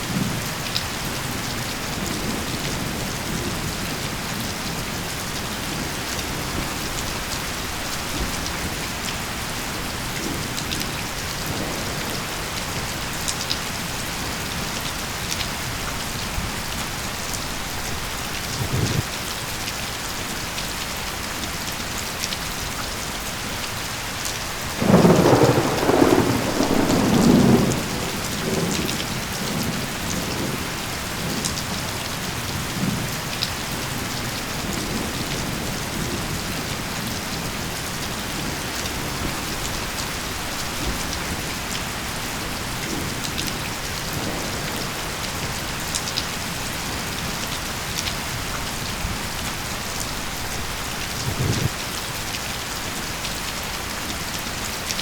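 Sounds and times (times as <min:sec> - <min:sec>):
steady rain falling: 0:00.0 - 0:55.0
thunder clap rumbling: 0:18.4 - 0:19.0, 0:24.8 - 0:31.4, 0:50.4 - 0:51.8.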